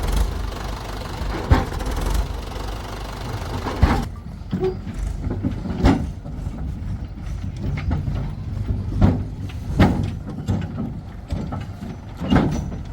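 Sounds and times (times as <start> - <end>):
diesel engine running: 0.0 - 4.2.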